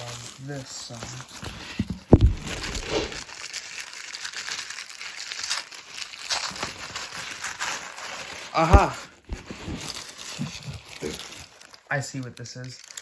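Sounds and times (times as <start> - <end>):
packaging torn and crinkled: 0.0 - 13.0.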